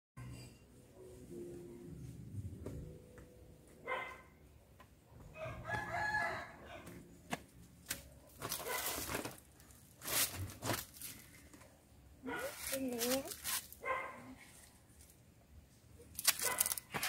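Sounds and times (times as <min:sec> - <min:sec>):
rustling: 0:07.8 - 0:15.2, 0:16.1 - 0:17.0.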